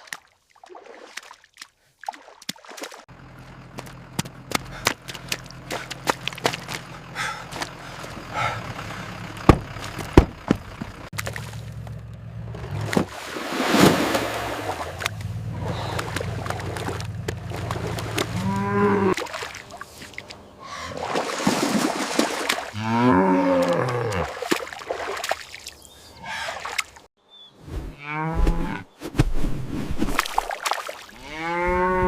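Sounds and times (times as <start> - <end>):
rushing splashing water: 0.0 - 3.1, 12.8 - 20.3, 21.0 - 22.8, 23.5 - 25.9, 30.2 - 31.3
sharp knocks: 9.5 - 10.7
cow mooing: 18.2 - 19.2, 22.7 - 24.3, 28.0 - 28.9, 31.2 - 32.0.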